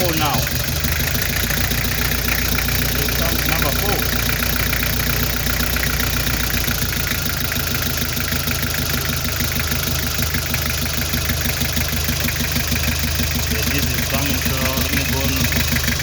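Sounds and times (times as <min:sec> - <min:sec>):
diesel engine idling: 0:00.0 - 0:16.0.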